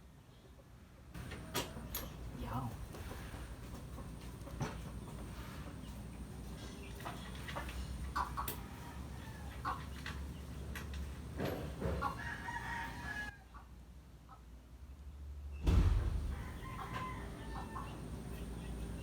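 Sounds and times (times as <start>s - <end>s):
rooster crowing: 8.5s - 9.9s, 11.8s - 13.5s, 16.0s - 18.6s
loud low thump: 15.6s - 16.8s.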